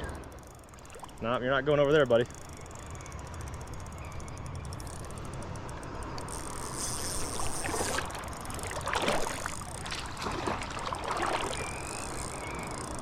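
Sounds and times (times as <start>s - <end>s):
fish splashing at water surface: 7.4s - 12.4s
creek water rushing: 7.6s - 11.8s.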